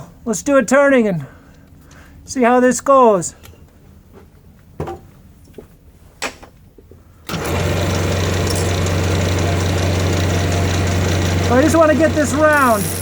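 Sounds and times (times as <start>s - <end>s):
wood lathe motor humming: 7.3s - 13.0s.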